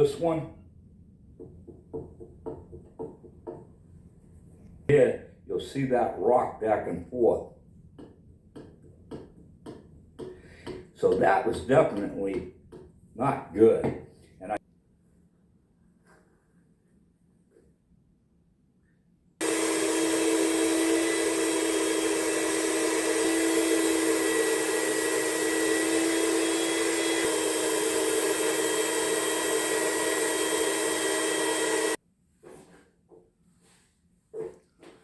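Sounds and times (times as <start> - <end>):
electric motor whirring: 19.4 - 32.0.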